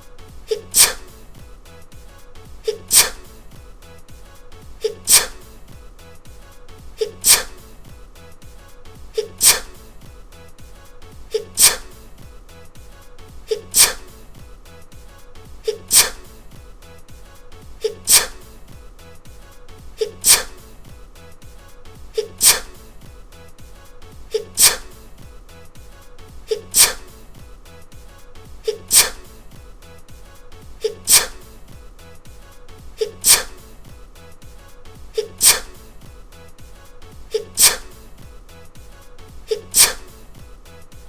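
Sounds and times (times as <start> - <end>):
person sneezing: 0.5 - 1.2, 2.6 - 3.3, 4.8 - 5.5, 15.7 - 16.3, 24.3 - 25.0.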